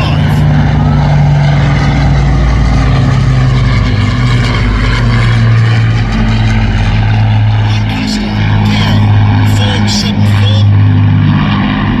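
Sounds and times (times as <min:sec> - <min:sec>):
propeller plane engine drone: 0:00.0 - 0:12.0.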